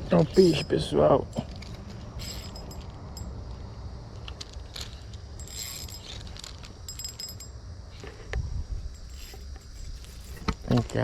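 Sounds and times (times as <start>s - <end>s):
high metallic tones: 0.0s - 3.6s, 5.3s - 7.7s.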